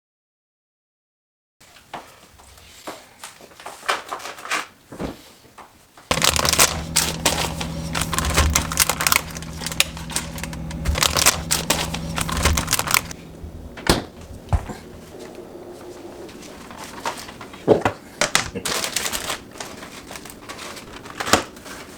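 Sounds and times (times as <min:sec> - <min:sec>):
kitchen appliance motor humming: 0:06.1 - 0:17.4.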